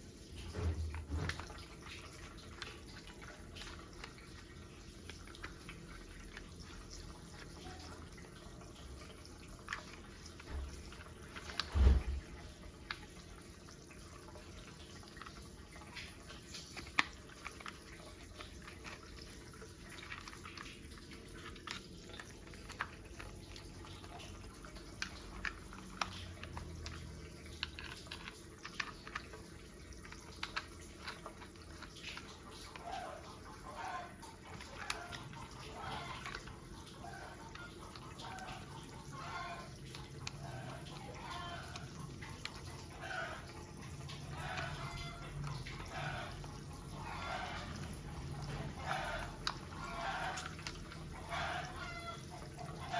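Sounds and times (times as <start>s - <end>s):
plastic toy parts clicking: 14.7s - 33.2s, 33.8s - 43.5s, 47.4s - 51.9s.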